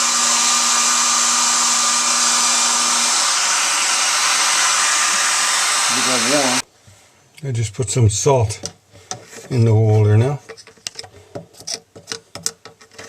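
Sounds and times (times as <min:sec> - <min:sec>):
hair dryer blowing: 0:00.0 - 0:06.6.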